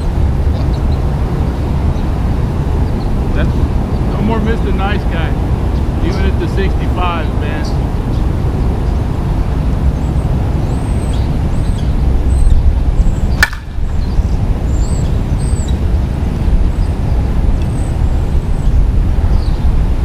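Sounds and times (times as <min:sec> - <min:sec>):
wind rumble on microphone: 0:00.0 - 0:20.0
softball bat hitting ball: 0:13.4 - 0:13.8.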